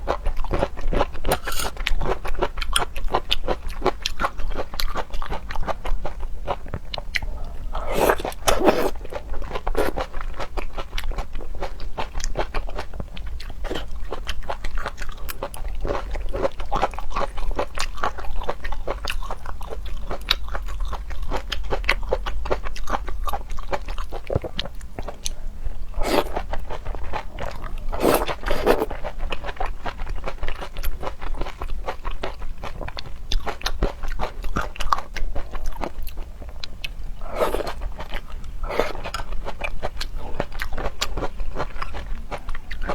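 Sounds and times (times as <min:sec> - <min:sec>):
wet chewing with crunching bites: 0:00.0 - 0:42.9.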